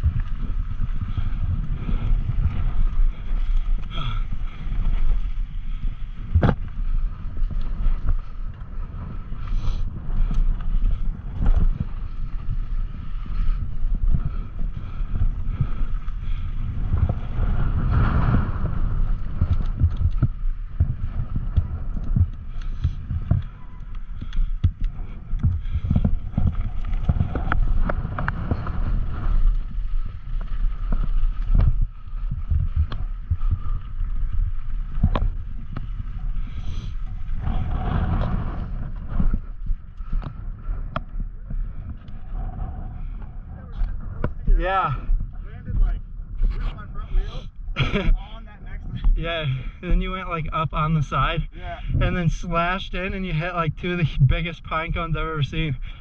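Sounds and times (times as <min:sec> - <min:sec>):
bike rattling and knocking: 0:00.0 - 0:46.6
bike tyres rolling on dirt: 0:00.0 - 0:56.0
wind rumble on microphone: 0:00.0 - 0:56.0.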